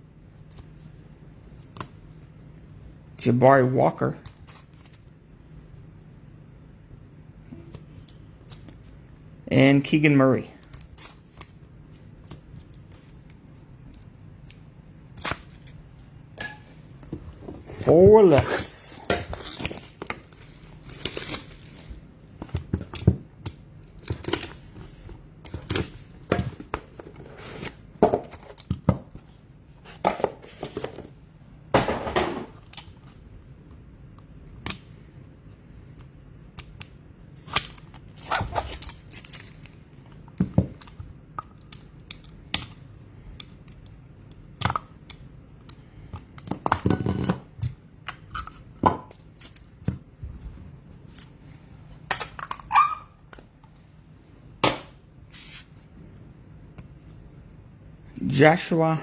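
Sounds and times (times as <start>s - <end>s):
card pack wrapper tearing: 19.3s - 21.9s
wrapper crinkling: 19.4s - 22.0s.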